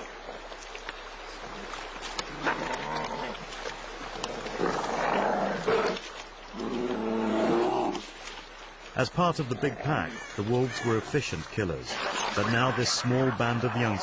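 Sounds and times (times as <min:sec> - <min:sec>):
animals growling and snarling: 0:02.3 - 0:03.4, 0:04.1 - 0:08.1.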